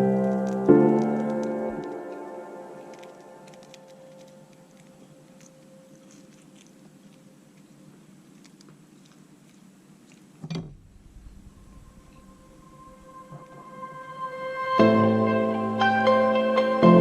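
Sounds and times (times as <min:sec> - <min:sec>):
parrot crunching food: 0:00.0 - 0:13.6.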